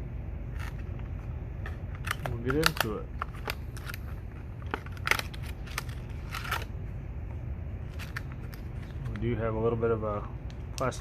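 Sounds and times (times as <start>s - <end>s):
steady low hum: 0.0s - 11.0s
packaging clicks and rustles: 1.7s - 6.7s.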